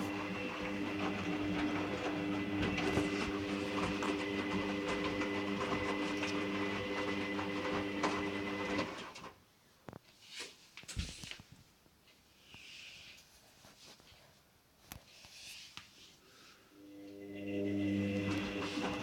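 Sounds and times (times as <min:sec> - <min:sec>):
washing machine running: 0:00.0 - 0:09.3, 0:16.9 - 0:19.0.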